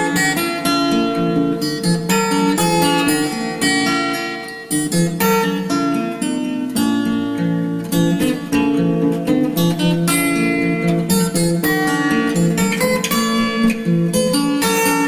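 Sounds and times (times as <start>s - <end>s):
strummed acoustic guitar: 0.0s - 15.0s.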